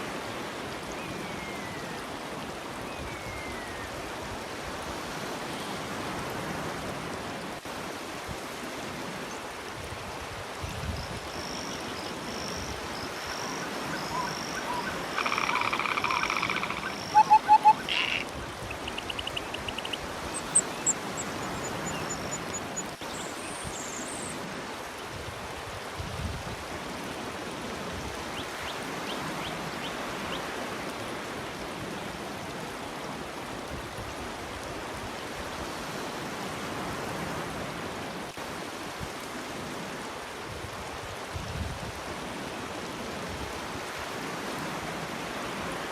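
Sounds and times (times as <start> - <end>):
surf washing on shore: 0.0 - 45.9
animal calls and chirps: 11.2 - 22.9
harsh animal call: 13.1 - 20.9.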